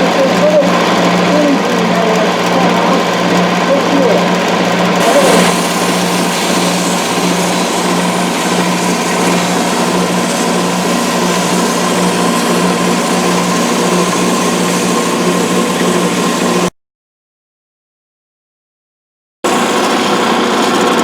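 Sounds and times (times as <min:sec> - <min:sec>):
wood lathe motor hum: 0:00.0 - 0:16.7, 0:19.5 - 0:21.0.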